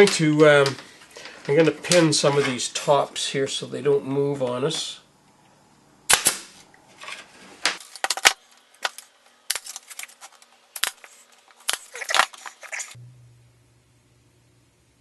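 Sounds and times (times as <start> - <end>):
pin nailer firing: 6.1 - 6.5
faint low hum: 12.9 - 15.0.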